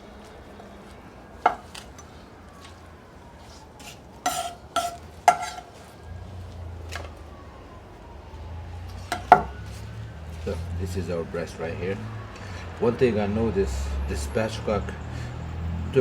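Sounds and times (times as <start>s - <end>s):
knife and utensils clinking: 3.8s - 5.8s.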